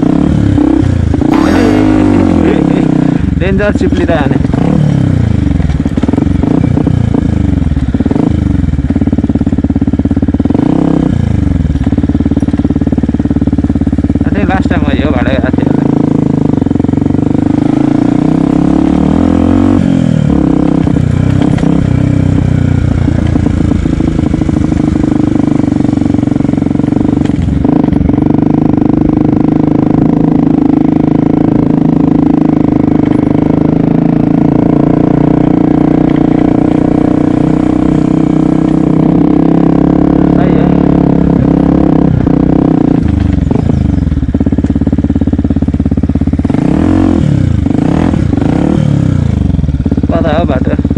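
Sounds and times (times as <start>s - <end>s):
motorcycle engine running: 0.0s - 50.9s.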